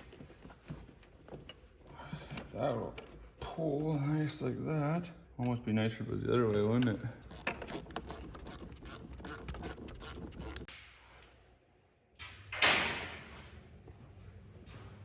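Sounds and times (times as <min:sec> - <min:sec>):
socket ratchet clicking: 0:07.3 - 0:10.7.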